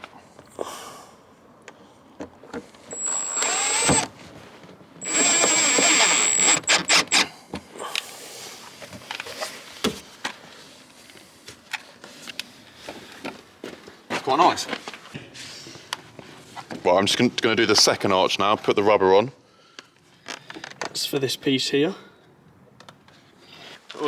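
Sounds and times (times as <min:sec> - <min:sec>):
drill trigger blips: 0:02.9 - 0:04.1, 0:05.0 - 0:07.2
power drill motor whining: 0:02.9 - 0:04.2, 0:05.0 - 0:07.3.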